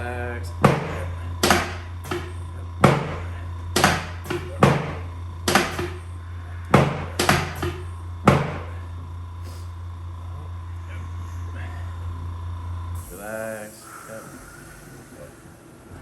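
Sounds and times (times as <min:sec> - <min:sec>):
sharp knocks: 0:00.6 - 0:06.1, 0:06.7 - 0:08.8.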